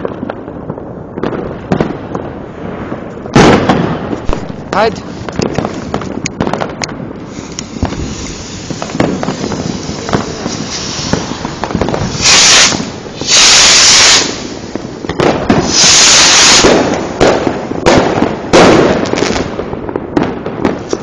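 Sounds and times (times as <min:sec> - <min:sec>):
fireworks popping and crackling: 0:00.0 - 0:21.0
loud hissing bursts: 0:07.2 - 0:14.9, 0:15.6 - 0:17.0.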